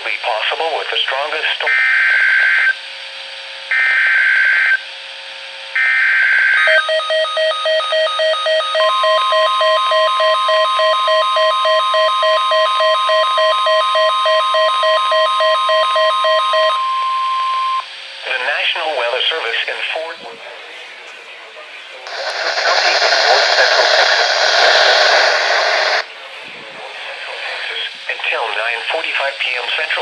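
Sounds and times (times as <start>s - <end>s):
steady warning alarm tone: 1.7s - 2.8s, 3.7s - 4.8s, 5.8s - 17.8s.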